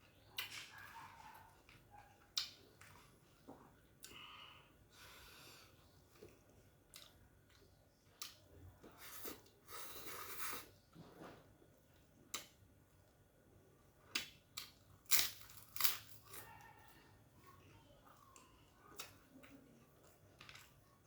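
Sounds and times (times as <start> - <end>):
person chewing food: 0.4 - 10.7, 18.1 - 21.0
breathing: 4.1 - 5.8.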